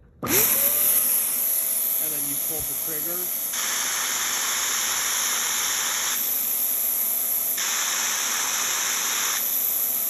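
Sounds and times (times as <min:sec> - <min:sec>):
spot cleaner motor whine: 0:00.2 - 0:10.0
water hissing through hose: 0:02.0 - 0:10.0.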